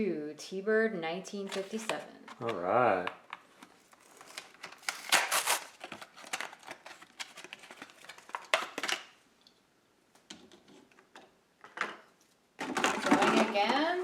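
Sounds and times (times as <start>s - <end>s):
plastic blister packaging tearing: 3.9s - 9.1s.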